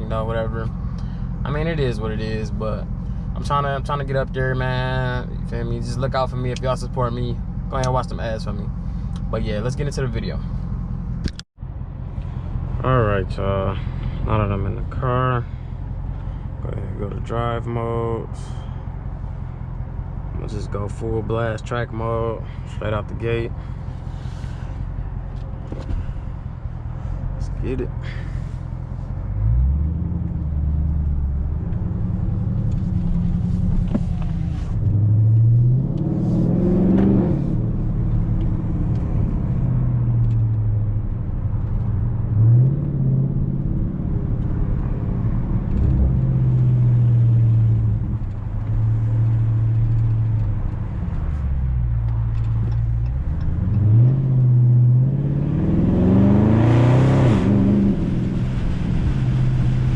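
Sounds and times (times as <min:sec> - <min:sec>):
car engine accelerating hard: 0:20.3 - 0:59.9.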